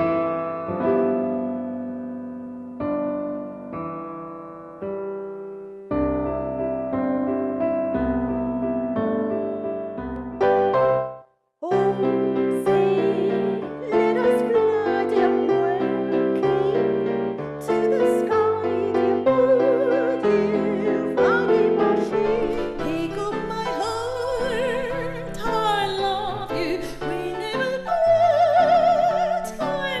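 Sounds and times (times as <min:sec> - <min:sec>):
piano playing: 0:00.0 - 0:30.0
operatic singing: 0:17.6 - 0:30.0.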